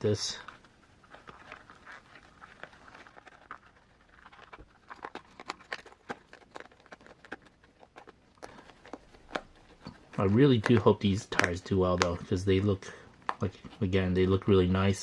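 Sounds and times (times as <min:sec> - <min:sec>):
rubber tires clicking and rustling: 0:00.0 - 0:14.3.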